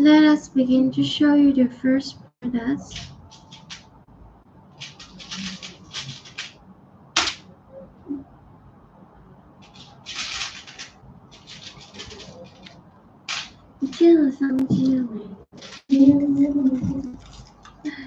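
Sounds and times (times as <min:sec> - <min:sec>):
jewellery rustling and clicking: 0:02.9 - 0:04.0, 0:04.8 - 0:06.6, 0:09.6 - 0:14.2, 0:14.8 - 0:17.9.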